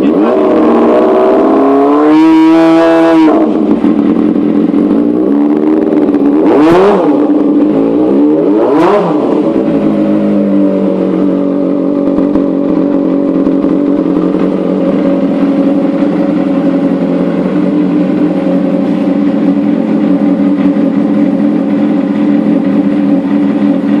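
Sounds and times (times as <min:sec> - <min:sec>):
motorcycle engine revving and idling: 0:00.0 - 0:24.0.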